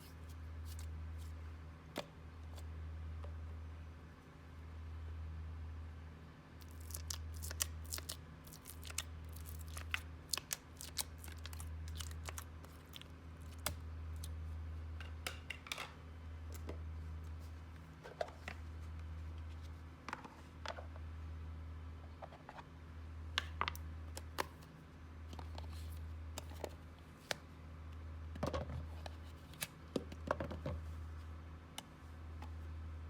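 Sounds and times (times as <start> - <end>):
slime being kneaded by hand: 6.6 - 14.4.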